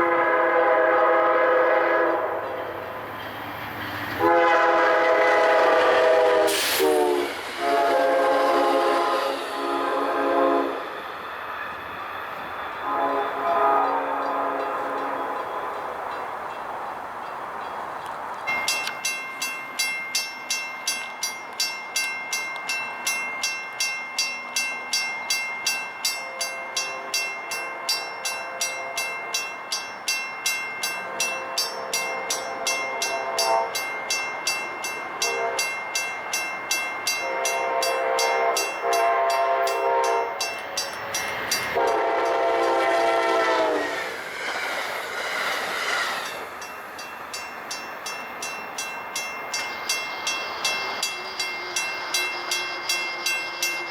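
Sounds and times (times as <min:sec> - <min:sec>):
train horn blasts: 0:00.0 - 0:02.9, 0:04.2 - 0:11.0, 0:12.8 - 0:15.9, 0:26.2 - 0:27.2, 0:27.9 - 0:29.3, 0:31.0 - 0:33.9, 0:35.2 - 0:35.8, 0:37.1 - 0:40.6, 0:41.7 - 0:44.2
crossing bell ringing: 0:06.9 - 0:44.0, 0:46.2 - 0:53.9.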